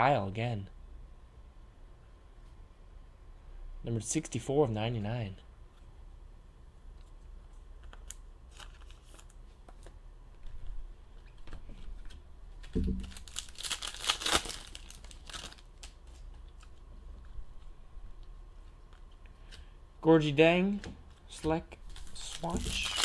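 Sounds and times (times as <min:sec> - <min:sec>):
foil wrapper crinkling and tearing: 0:07.8 - 0:09.4, 0:12.9 - 0:16.7, 0:21.9 - 0:23.0.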